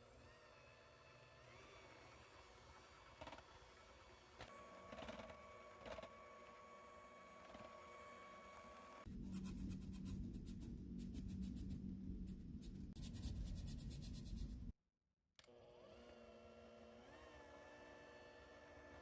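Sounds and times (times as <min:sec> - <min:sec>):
electric mixer motor running: 0:15.5 - 0:19.0.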